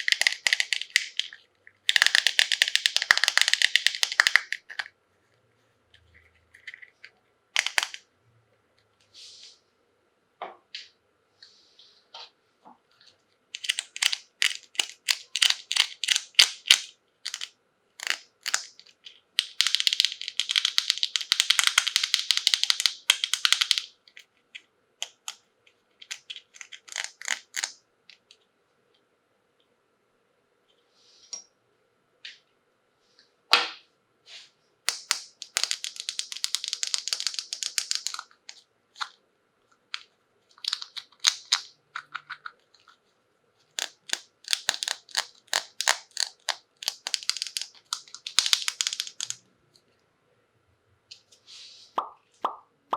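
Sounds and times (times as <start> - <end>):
plastic packaging crackling: 0.0 - 4.9, 34.9 - 39.1, 40.5 - 42.9, 43.8 - 49.4.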